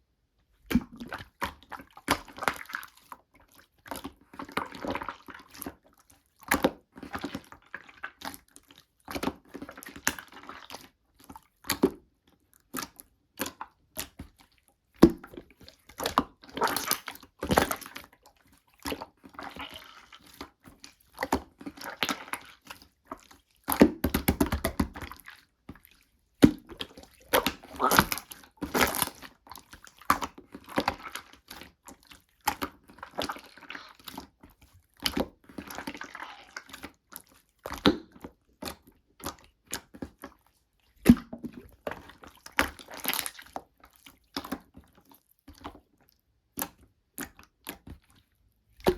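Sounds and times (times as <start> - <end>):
slime squished by hand: 21.1 - 34.3.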